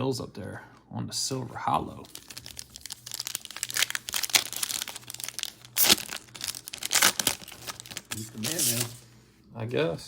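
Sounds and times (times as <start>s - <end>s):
foil wrapper crinkling and tearing: 2.0s - 9.0s.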